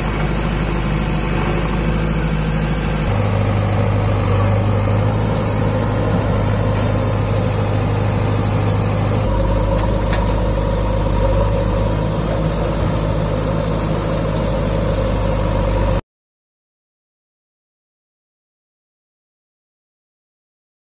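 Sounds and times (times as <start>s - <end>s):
diesel engine running: 0.0s - 16.0s.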